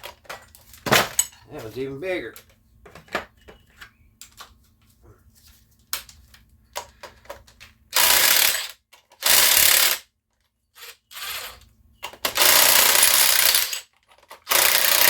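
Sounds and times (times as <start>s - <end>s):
power drill bursts: 8.0s - 10.0s, 10.8s - 11.6s, 12.4s - 13.9s, 14.5s - 15.0s.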